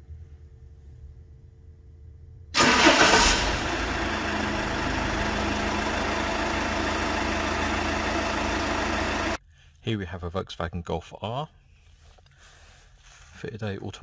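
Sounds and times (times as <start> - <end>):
van engine idling: 2.6 - 9.4.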